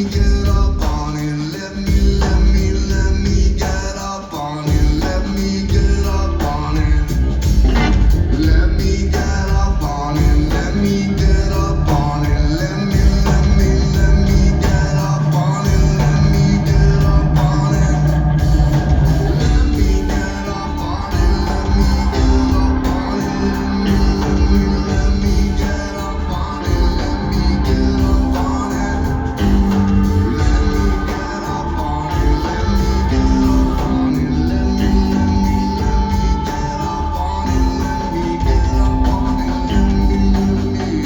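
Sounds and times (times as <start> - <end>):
person singing: 0.0 - 41.0
rock band playing: 0.0 - 41.0.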